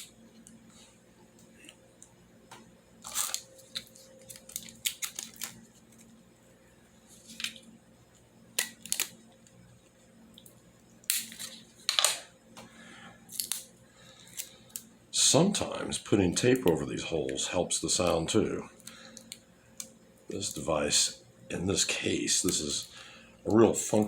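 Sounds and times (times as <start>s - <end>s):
plastic rustling and clicks: 3.0s - 6.1s.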